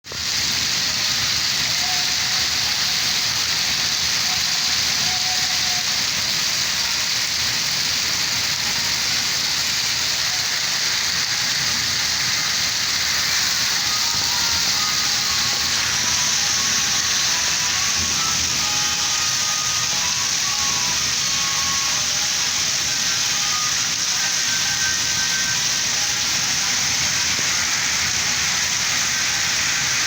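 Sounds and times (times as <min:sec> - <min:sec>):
steady rain: 0:00.0 - 0:30.0
soft melody: 0:10.2 - 0:30.0.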